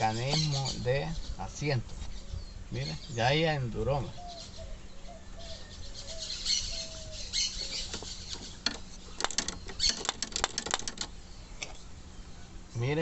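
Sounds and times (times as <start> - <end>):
faint bird chirps: 4.0 - 10.2
metal parts clicking and rattling: 7.8 - 11.2.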